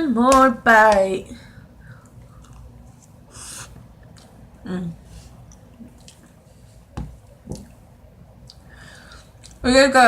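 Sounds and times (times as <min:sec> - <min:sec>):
wet chewing mouth sounds: 0:05.4 - 0:06.4.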